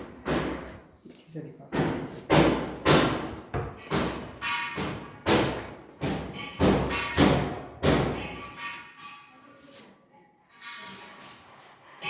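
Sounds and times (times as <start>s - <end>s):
heavy thumps and knocks: 0.0s - 0.7s, 1.7s - 8.4s.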